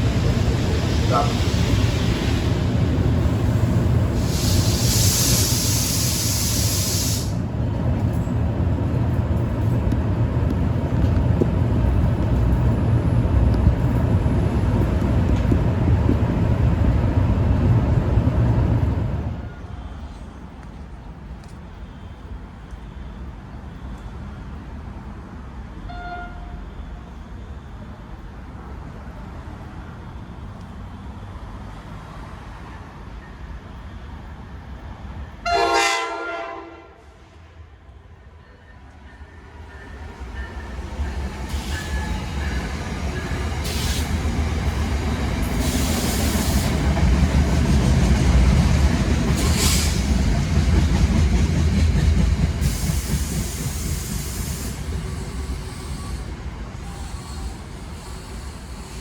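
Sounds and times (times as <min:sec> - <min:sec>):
sharp clicks of passing train: 0:00.0 - 0:59.0
train wheels rumbling on rails: 0:00.0 - 0:59.0
train horn blast: 0:25.9 - 0:26.7, 0:35.4 - 0:37.4.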